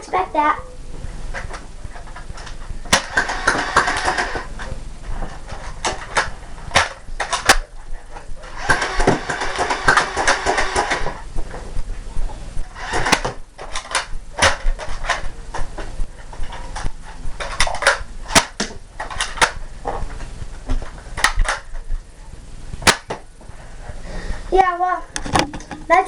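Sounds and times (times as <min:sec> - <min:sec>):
toy blasters clicking and snapping: 0:02.9 - 0:04.5, 0:05.8 - 0:07.7, 0:08.6 - 0:11.1, 0:12.8 - 0:15.2.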